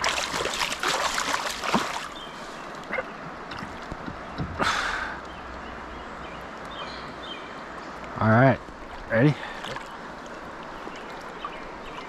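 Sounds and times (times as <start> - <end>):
water splash: 0.0 - 2.2
river water rushing: 0.0 - 12.0.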